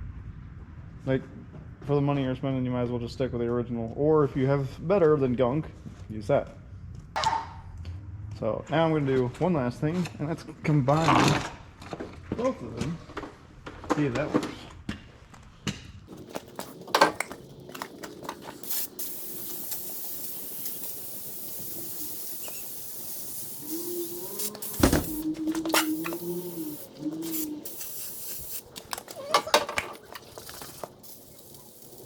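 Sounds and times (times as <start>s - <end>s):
cans knocking and clattering: 16.1s - 23.7s, 24.3s - 32.0s
aerosol cans spraying: 16.1s - 32.0s.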